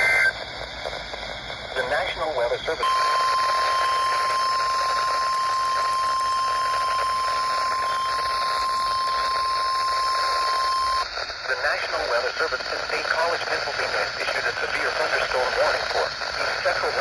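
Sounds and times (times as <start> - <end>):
radio static: 0.0 - 17.0
steady alarm tone: 2.8 - 11.1.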